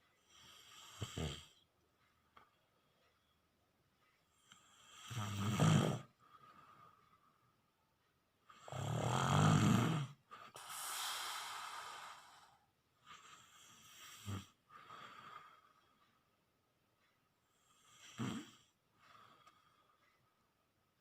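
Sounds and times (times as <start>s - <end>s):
person snoring: 4.7s - 6.1s, 8.6s - 12.6s, 17.8s - 18.6s
breathy breathing: 10.3s - 16.2s, 17.8s - 20.4s.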